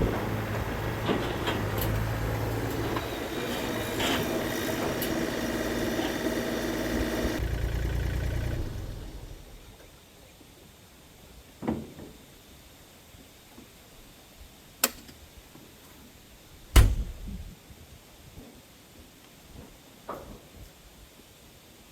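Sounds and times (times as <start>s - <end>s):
engine running: 0.0s - 9.8s
sharp knock: 16.8s - 17.2s
low rumble: 16.8s - 17.5s.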